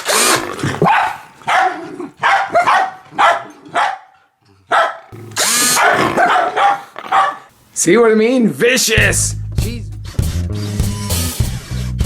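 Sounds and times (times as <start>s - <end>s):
small dog barking: 0.8s - 4.1s, 4.7s - 7.5s.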